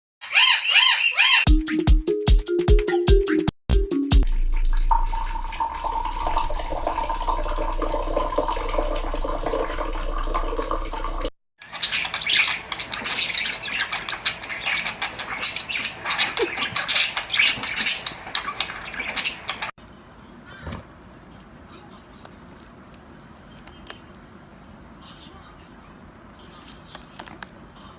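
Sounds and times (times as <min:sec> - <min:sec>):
parrot squawks and chatter: 0:00.2 - 0:01.5, 0:11.6 - 0:20.8, 0:24.9 - 0:27.9
running water: 0:04.2 - 0:11.3.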